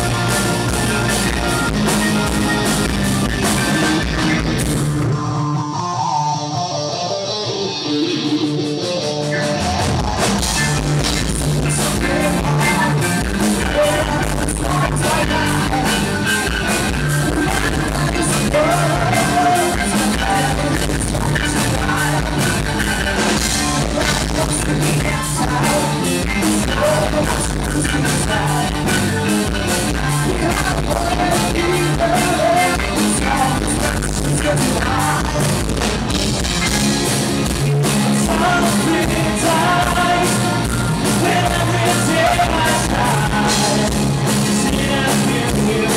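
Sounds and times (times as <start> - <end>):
bass guitar: 0.0 - 45.9
drums: 0.0 - 45.9
electric guitar: 0.0 - 45.9
person singing: 11.6 - 35.8, 38.0 - 45.9.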